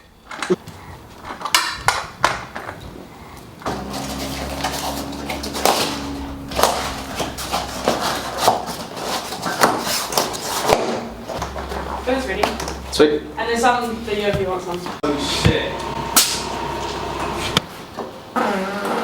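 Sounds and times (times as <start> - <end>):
steady low hum: 3.0 - 9.4, 10.0 - 17.7.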